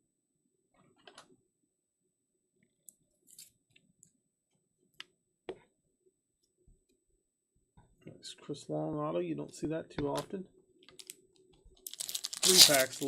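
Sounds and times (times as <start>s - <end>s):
trading cards clicking and rustling: 11.9s - 13.0s.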